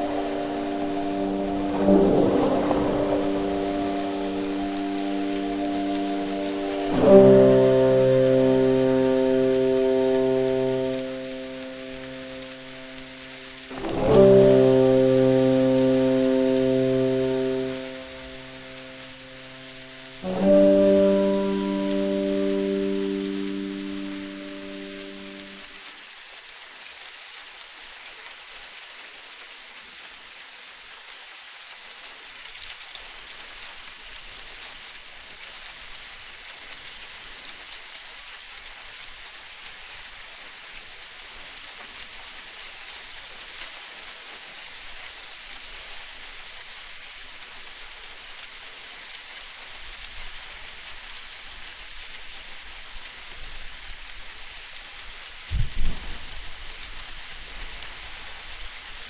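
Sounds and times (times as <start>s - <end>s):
water hissing: 0.0s - 25.8s
hiss of rain-like water: 0.0s - 59.0s.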